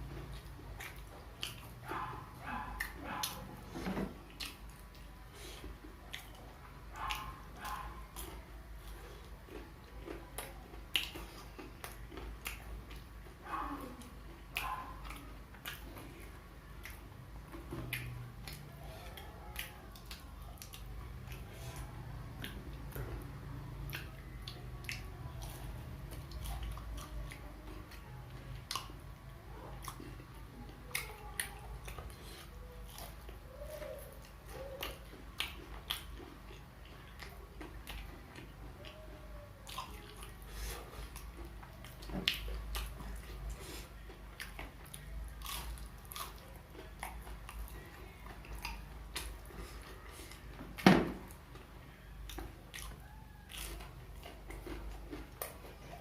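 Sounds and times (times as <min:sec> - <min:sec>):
crisp chewing crunches: 0:29.7 - 0:50.5, 0:52.3 - 0:56.0.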